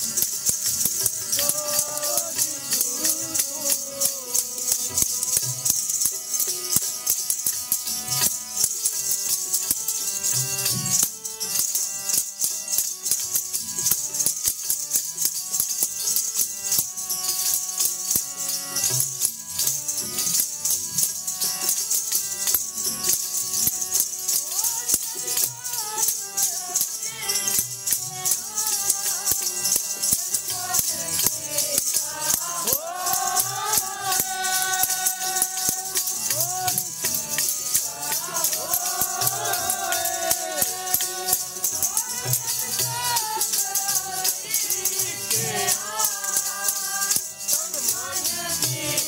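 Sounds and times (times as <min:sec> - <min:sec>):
person singing: 0:01.1 - 0:05.8, 0:24.4 - 0:49.0
jingling rattle: 0:14.8 - 0:49.0.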